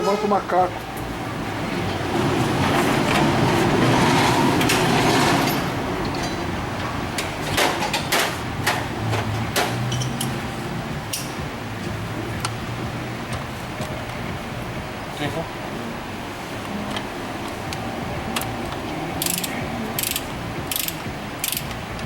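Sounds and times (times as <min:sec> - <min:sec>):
sharp metallic clicks and knocks: 0:19.2 - 0:21.8.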